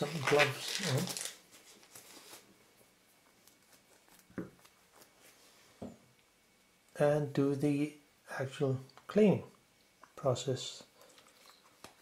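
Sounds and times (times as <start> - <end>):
gloves rustling: 0.0 - 5.8.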